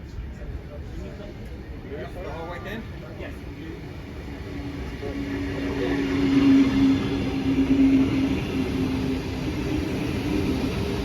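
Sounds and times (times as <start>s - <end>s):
train passing: 0.3s - 11.0s
train wheels rumbling: 3.0s - 11.0s.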